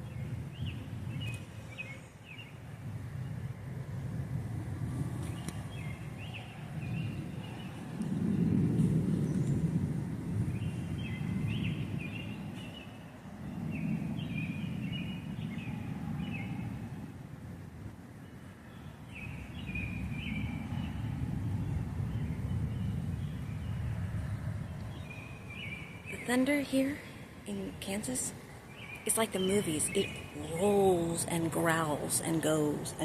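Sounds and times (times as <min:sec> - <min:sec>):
birds chirping: 0:00.0 - 0:04.0, 0:05.1 - 0:09.7, 0:10.4 - 0:17.0, 0:18.2 - 0:33.0
thunder rolling: 0:02.7 - 0:12.7, 0:19.4 - 0:26.1.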